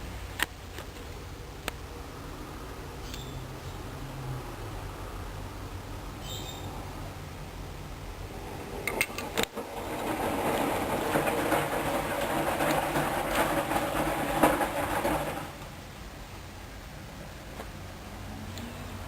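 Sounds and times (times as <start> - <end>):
washing machine humming: 0.0 - 19.0
washing machine drum clattering: 8.6 - 15.8.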